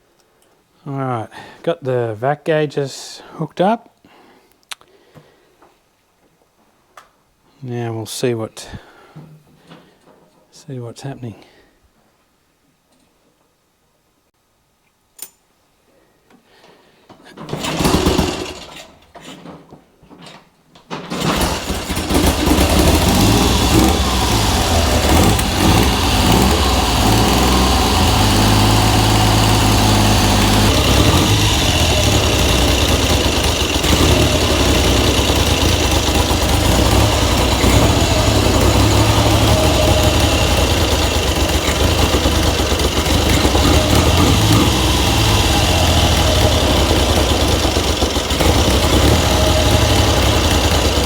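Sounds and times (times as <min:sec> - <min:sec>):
motorcycle engine starting and running: 0:17.5 - 0:18.9, 0:21.1 - 0:51.0.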